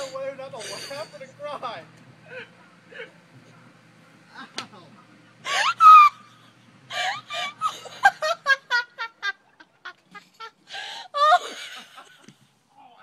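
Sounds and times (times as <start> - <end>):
man laughing: 11.2 - 12.3.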